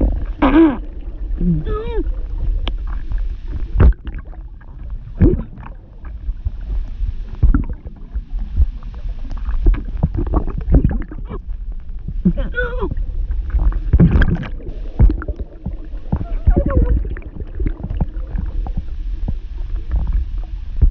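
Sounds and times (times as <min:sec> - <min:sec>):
woman gurgling underwater: 0:00.0 - 0:02.3, 0:05.1 - 0:05.8, 0:10.1 - 0:13.1, 0:13.9 - 0:18.5
low rumble: 0:00.0 - 0:20.9
bubbles popping: 0:03.8 - 0:06.2, 0:07.4 - 0:08.0, 0:09.3 - 0:11.4, 0:13.6 - 0:18.9.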